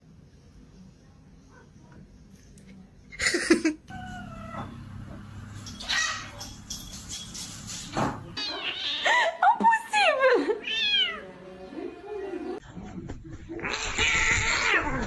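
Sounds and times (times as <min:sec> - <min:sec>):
cat crying out: 0:03.9 - 0:04.8, 0:05.8 - 0:06.4, 0:08.4 - 0:09.1, 0:13.6 - 0:15.0.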